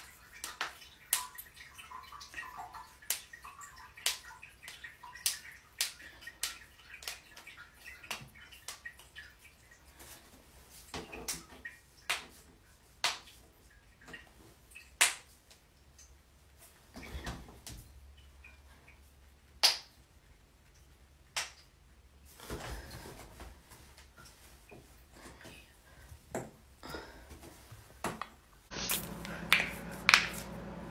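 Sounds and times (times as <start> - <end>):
soft rustling of movement: 9.1 - 14.8, 22.2 - 30.6.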